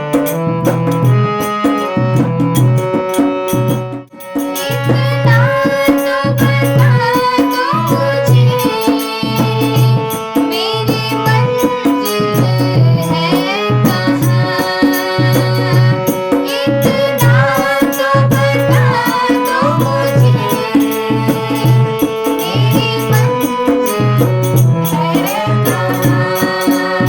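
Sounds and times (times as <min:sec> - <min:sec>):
tabla rhythm: 0:00.0 - 0:27.0
gliding devotional melody: 0:11.4 - 0:27.0.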